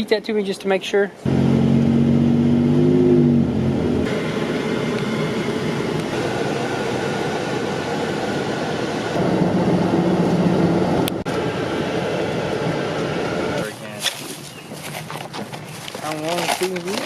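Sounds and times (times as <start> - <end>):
low hum: 1.2 - 13.7
moving vehicle rumbling: 1.2 - 17.0.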